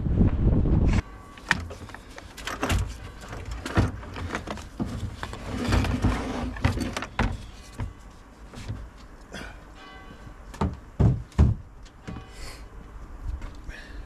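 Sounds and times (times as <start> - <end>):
hand tools clicking and knocking: 1.4 - 9.3.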